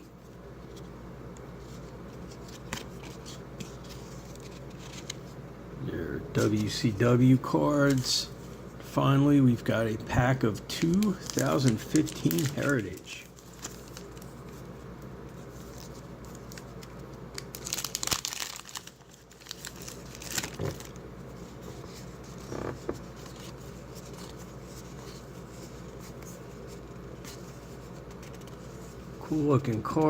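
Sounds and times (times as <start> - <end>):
wrapper tearing and crinkling: 10.8 - 14.3, 15.6 - 21.0.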